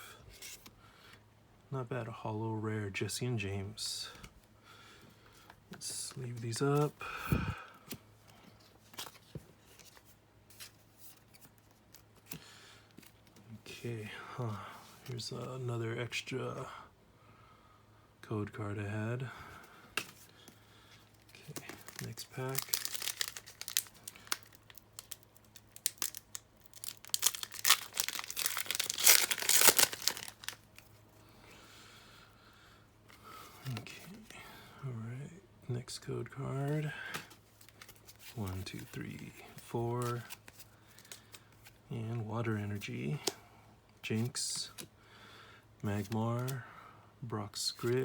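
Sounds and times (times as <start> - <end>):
cards rustling in plastic sleeves: 5.4 - 13.8, 14.4 - 15.6, 19.2 - 31.2, 36.6 - 43.4, 46.0 - 46.6, 47.5 - 48.0
foil wrapper crinkling and tearing: 21.8 - 30.8.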